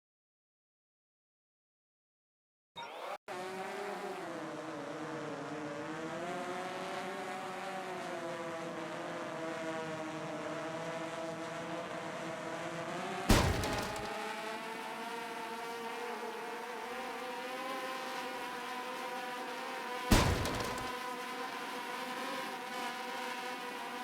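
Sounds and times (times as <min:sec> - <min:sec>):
drone propellers whining: 0:13.3 - 0:14.1, 0:20.1 - 0:20.9.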